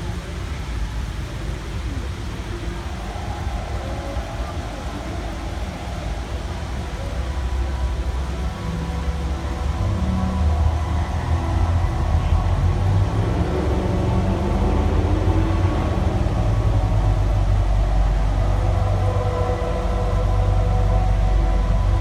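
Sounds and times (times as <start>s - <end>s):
deep steady rumble: 7.0s - 22.0s
sustained musical tones: 7.0s - 22.0s.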